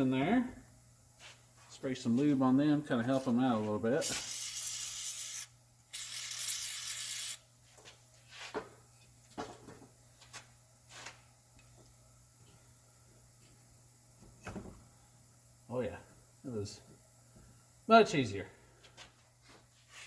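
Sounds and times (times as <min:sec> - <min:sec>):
aerosol spray can hissing: 0:04.1 - 0:07.4.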